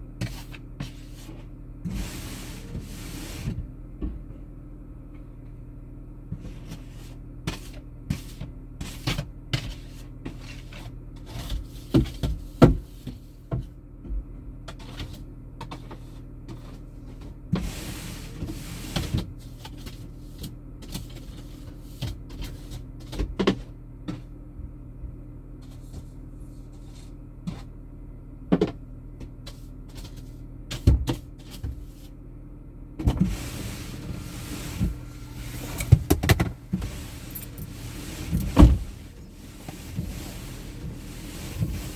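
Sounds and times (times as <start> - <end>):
car engine and road drone: 31.4 - 41.9.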